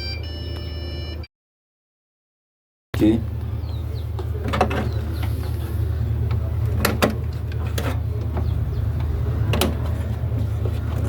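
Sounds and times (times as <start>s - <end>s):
sharp clicks and knocks: 6.3s - 10.0s.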